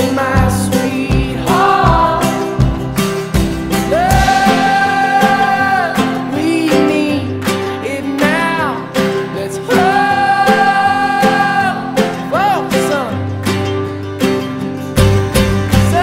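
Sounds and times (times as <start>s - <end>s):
country song: 0.0s - 16.0s
strummed acoustic guitar: 0.0s - 16.0s
gliding vocal melody: 0.8s - 3.2s, 3.8s - 8.0s.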